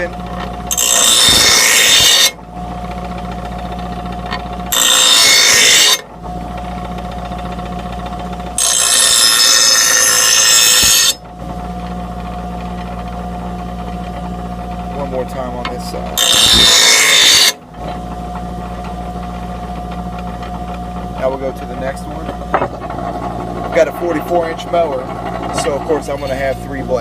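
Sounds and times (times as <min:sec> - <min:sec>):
blade grinding on grinding wheel: 0:00.0 - 0:27.0
grinder motor humming: 0:00.0 - 0:27.0.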